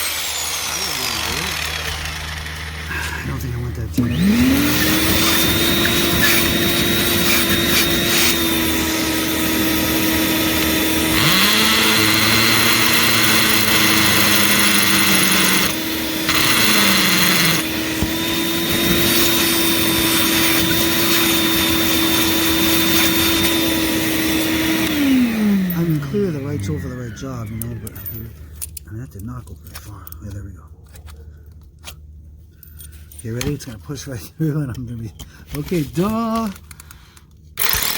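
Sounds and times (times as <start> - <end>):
hammer drill into concrete: 0.0 - 2.9, 4.0 - 26.9, 37.6 - 37.9
power tool motor humming: 0.0 - 28.0, 37.6 - 37.9.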